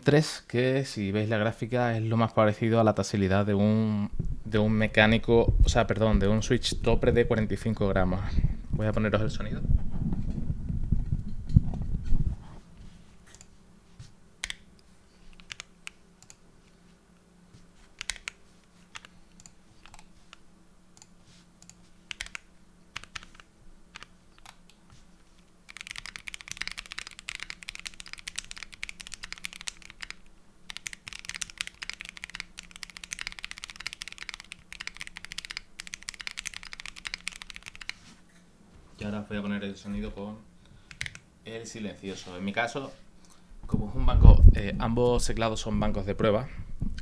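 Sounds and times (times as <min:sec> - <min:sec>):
mechanical keyboard typing: 0:15.3 - 0:16.4, 0:18.0 - 0:20.1, 0:21.0 - 0:24.7, 0:25.7 - 0:38.0, 0:40.9 - 0:41.2.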